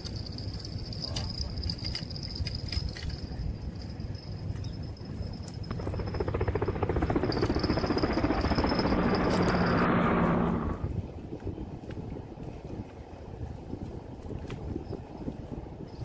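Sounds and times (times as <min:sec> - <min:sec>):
low hum: 0:00.0 - 0:14.1
insects trilling: 0:03.8 - 0:10.7
rough mechanical ticking noise: 0:05.3 - 0:10.3.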